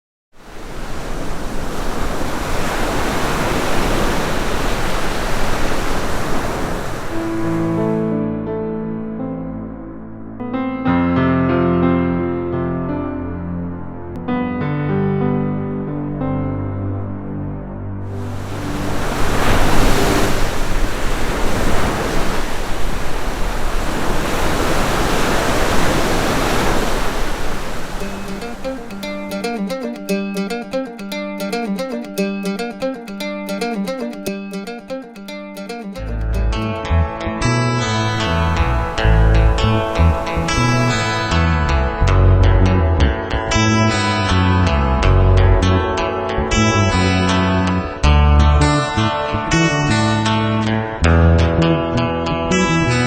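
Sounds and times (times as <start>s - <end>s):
ocean waves breaking: 0.4s - 8.1s, 18.0s - 30.0s, 37.9s - 41.4s
loud rushing noise: 18.1s - 29.0s.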